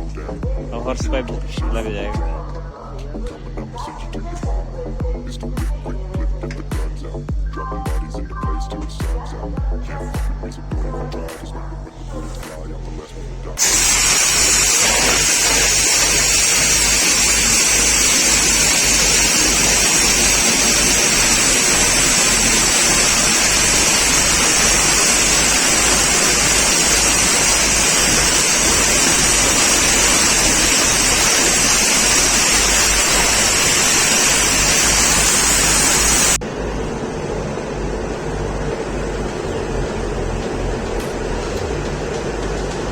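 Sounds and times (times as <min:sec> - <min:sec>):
low rumble: 0:00.0 - 0:42.9
compressed air hissing: 0:13.6 - 0:42.9.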